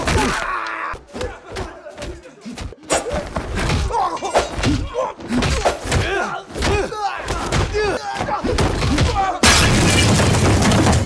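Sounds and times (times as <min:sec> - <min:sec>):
shouts and grunts: 0:00.0 - 0:09.4
punch and kick impacts: 0:02.9 - 0:07.9.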